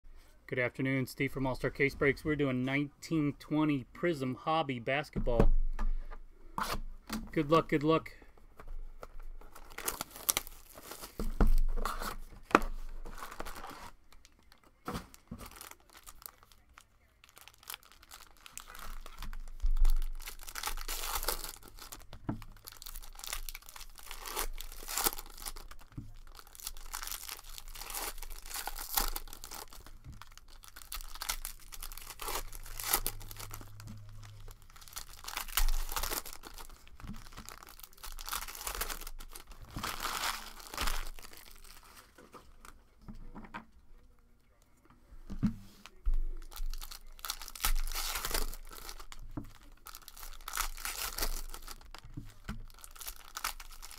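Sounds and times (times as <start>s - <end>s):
plastic wrappers tearing and crinkling: 9.4s - 42.8s, 45.8s - 53.9s.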